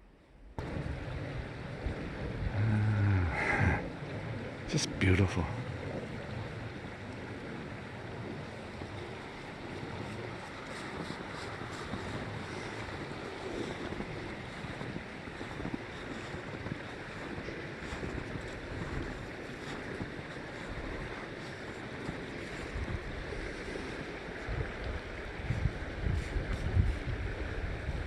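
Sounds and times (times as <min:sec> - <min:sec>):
creek water rushing: 0:00.6 - 0:28.0.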